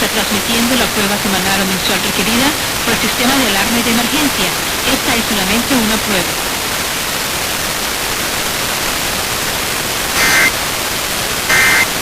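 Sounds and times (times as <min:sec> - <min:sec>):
radio static hiss: 0:00.0 - 0:12.0
emergency alert data bursts: 0:10.1 - 0:10.8, 0:11.5 - 0:12.0.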